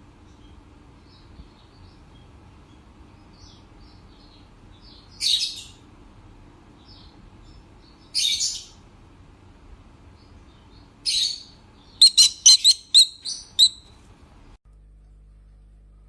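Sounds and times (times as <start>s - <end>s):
parrots chirping: 1.1s - 5.8s, 6.8s - 8.8s, 10.5s - 13.9s
parrot harsh calls: 11.1s - 13.8s.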